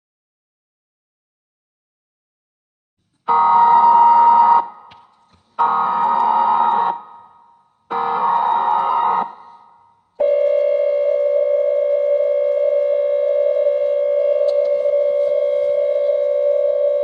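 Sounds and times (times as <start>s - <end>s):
loud steady alert tone: 5.6s - 17.0s.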